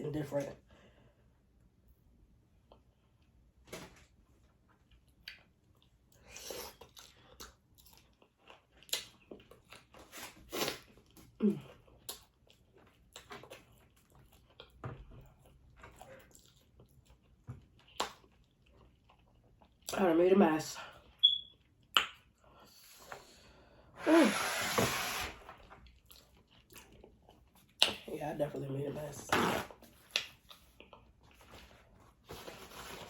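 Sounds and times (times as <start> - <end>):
person chewing seafood: 4.8 - 19.9, 25.8 - 27.9.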